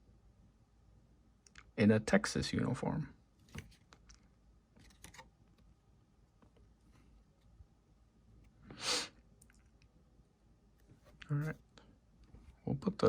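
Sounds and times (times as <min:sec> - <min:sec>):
cards clicking and tapping: 0:04.8 - 0:05.3.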